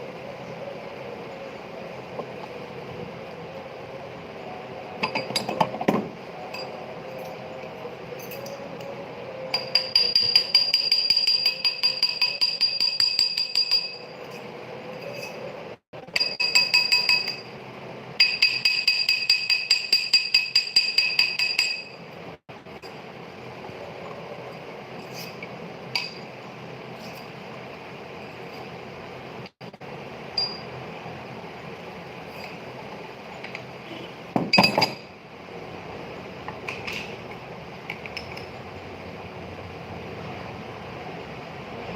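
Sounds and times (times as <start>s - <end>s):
small hammer tapping on metal: 9.6s - 14.0s.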